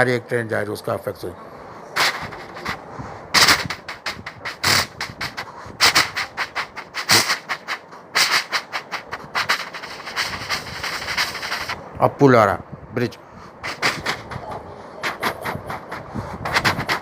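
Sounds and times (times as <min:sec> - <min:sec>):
man imitating steam train: 0:03.4 - 0:11.8, 0:13.6 - 0:17.0.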